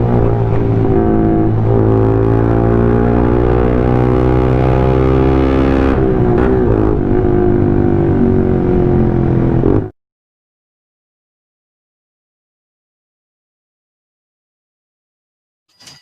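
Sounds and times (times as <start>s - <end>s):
motorcycle engine drone: 0.0s - 10.0s.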